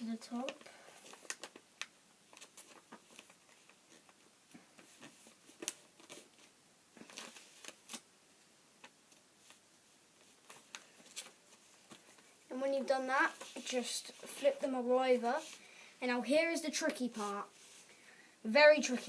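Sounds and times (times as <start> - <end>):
paper crinkling and rustling: 0.3 - 8.0, 10.2 - 12.4.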